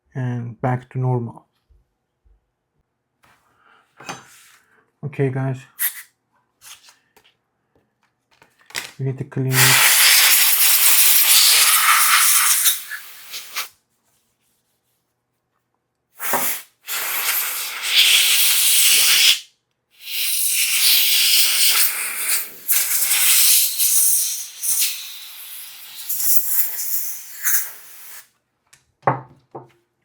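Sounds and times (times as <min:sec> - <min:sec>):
air blower hissing: 0:09.5 - 0:13.7, 0:16.2 - 0:19.4, 0:20.0 - 0:28.2.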